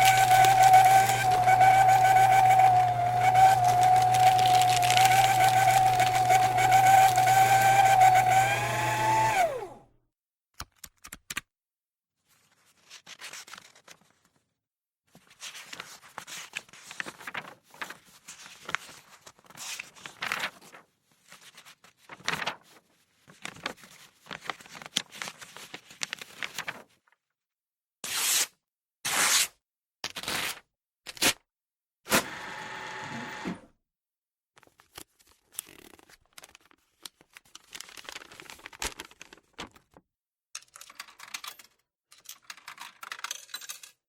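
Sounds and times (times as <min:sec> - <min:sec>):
small electric motor whining: 0:00.0 - 0:09.8, 0:32.2 - 0:33.6.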